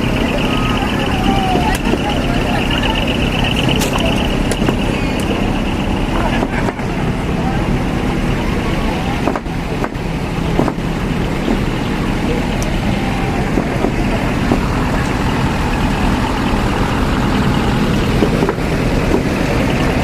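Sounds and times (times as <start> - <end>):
truck engines rumbling: 0.0 - 20.0.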